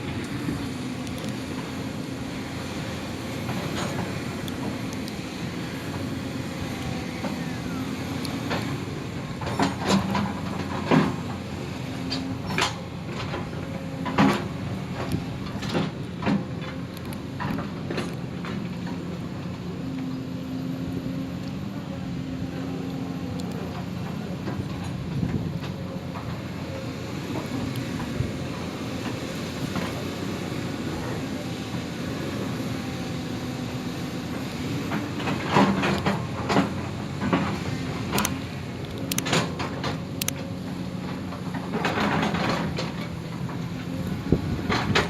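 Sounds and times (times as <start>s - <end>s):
sharp clicks and knocks: 34.9s - 43.1s.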